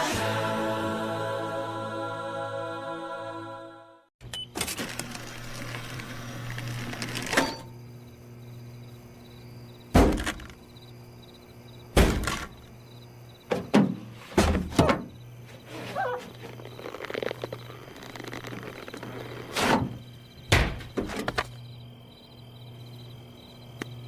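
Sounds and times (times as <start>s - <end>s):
loud thuds and knocks: 9.9s - 10.6s, 11.9s - 12.6s, 13.5s - 15.2s, 19.6s - 21.4s.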